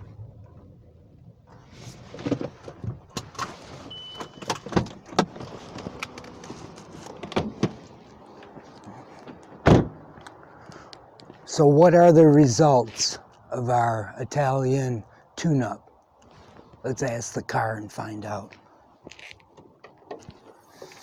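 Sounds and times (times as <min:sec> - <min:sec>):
low hum: 0:00.0 - 0:01.7
clicks and knocks handling things: 0:02.1 - 0:09.6.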